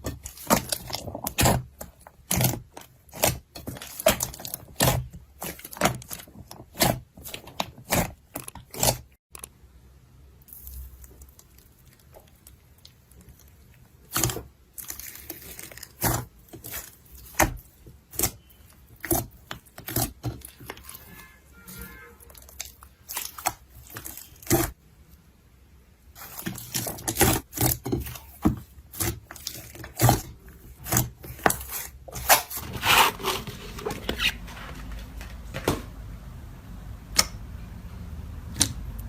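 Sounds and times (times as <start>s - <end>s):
slime popping and crackling: 0.0s - 9.5s, 10.5s - 18.4s, 22.3s - 24.8s.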